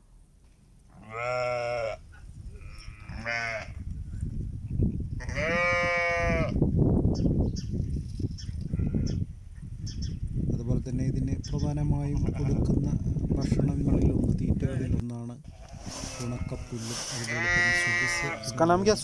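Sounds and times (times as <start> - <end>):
goats bleating: 1.0 - 2.0, 2.6 - 3.8, 5.2 - 6.6, 16.0 - 19.0.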